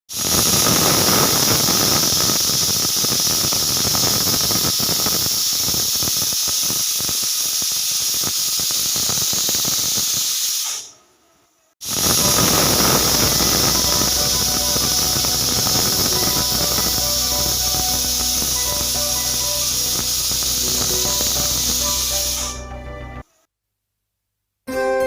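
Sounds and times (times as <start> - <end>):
pressure cooker whistle hissing: 0.1 - 10.9, 11.8 - 22.8.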